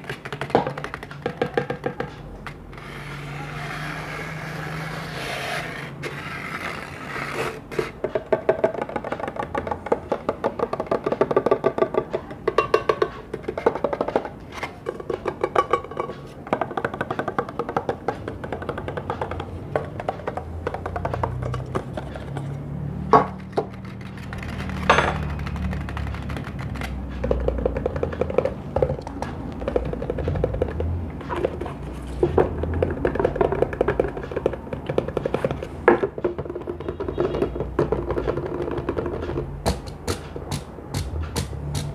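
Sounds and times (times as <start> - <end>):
rapid tapping on hard objects: 0.0 - 41.9
sharp knocks: 32.2 - 41.9.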